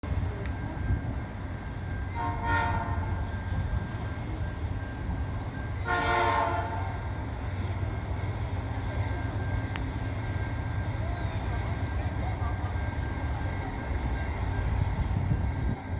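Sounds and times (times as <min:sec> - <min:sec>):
locomotive air horn blasts: 0:02.1 - 0:03.3, 0:05.8 - 0:07.0.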